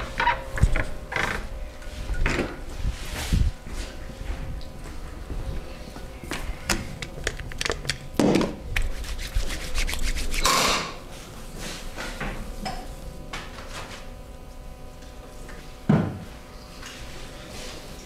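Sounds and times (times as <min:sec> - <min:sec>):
hands rubbing skin: 0:08.8 - 0:10.5.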